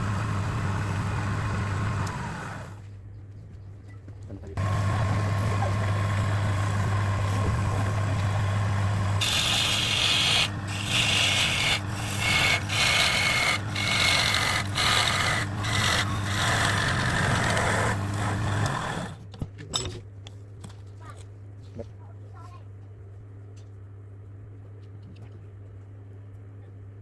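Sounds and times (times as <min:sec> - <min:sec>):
power tool motor humming: 0:00.0 - 0:02.8, 0:04.6 - 0:19.2
tool hissing through wood: 0:04.6 - 0:19.2.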